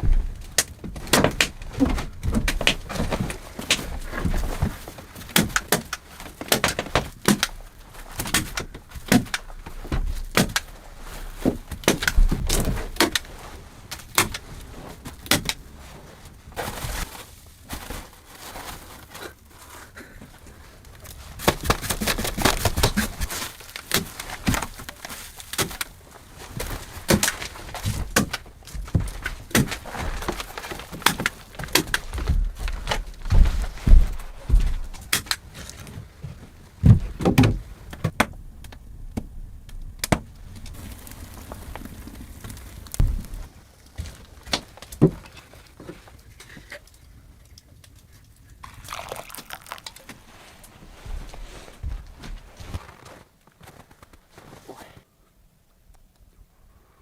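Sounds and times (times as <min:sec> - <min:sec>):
knocks clicks and thuds: 0:00.0 - 0:10.8, 0:11.4 - 0:13.3, 0:21.4 - 0:35.5, 0:36.2 - 0:40.8, 0:41.4 - 0:46.0.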